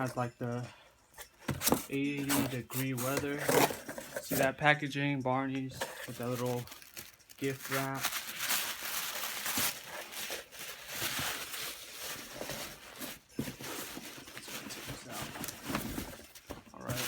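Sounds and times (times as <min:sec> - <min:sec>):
wrapping paper rustling and tearing: 0:05.8 - 0:17.0.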